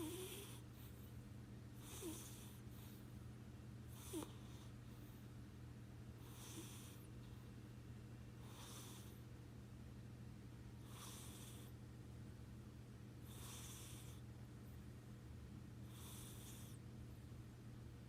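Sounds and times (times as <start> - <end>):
cat snoring softly: 0.0 - 1.1, 1.8 - 3.0, 3.9 - 5.2, 6.2 - 7.1, 8.4 - 9.2, 10.8 - 11.8, 13.2 - 14.3, 15.8 - 16.8.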